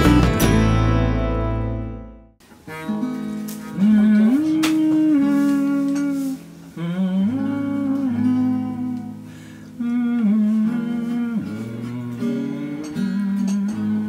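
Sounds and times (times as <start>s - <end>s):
plucked acoustic guitar: 0.0s - 14.0s
person humming a melody: 3.6s - 14.0s.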